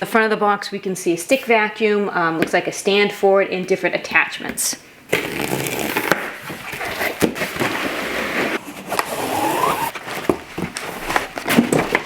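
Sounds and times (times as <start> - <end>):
cardboard rustling and scraping: 5.1 - 12.0.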